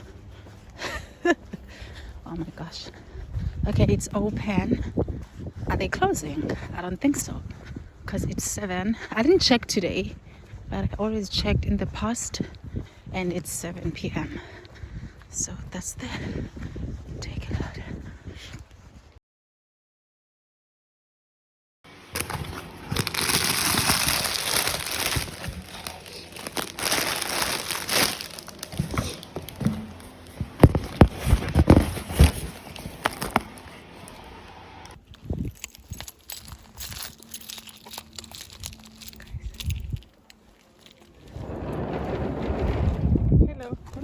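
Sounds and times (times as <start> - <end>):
crinkling and rustling: 21.9 - 44.0.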